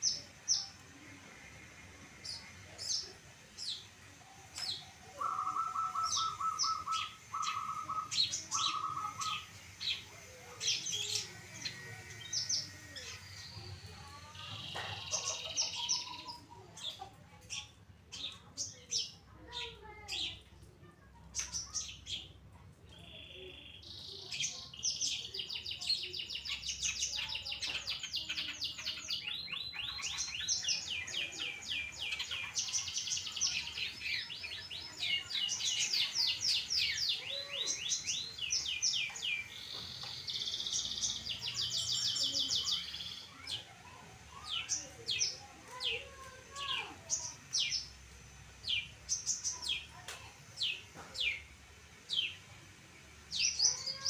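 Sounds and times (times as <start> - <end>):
bird singing fast trills: 4.7 - 16.5, 23.0 - 50.0, 53.1 - 54.0.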